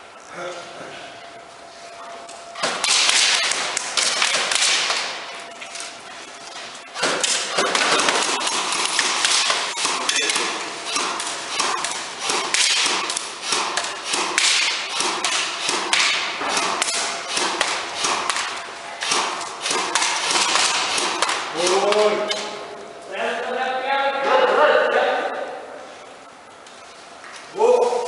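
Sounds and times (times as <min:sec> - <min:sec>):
airsoft guns firing: 0:02.6 - 0:05.3, 0:07.0 - 0:22.4.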